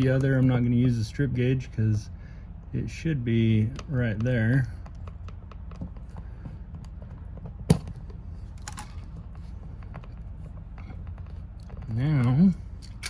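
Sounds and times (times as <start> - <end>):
wire strippers clicking and scraping: 3.6 - 13.0.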